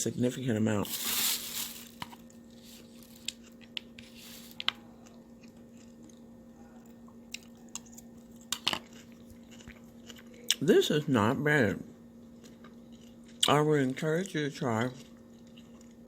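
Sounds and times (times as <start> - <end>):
faint steady hum: 0.0 - 16.0
person chewing salad: 0.9 - 10.6, 12.2 - 13.6, 14.8 - 16.0.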